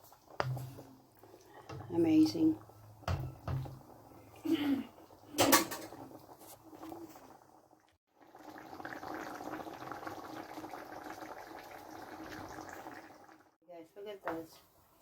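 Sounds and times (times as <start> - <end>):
porridge bubbling in a pot: 0.0 - 13.6.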